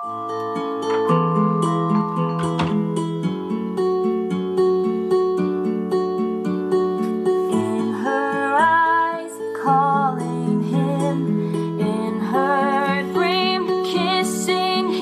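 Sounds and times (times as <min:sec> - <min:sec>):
strummed acoustic guitar: 0:00.0 - 0:15.0
woman singing: 0:07.3 - 0:15.0.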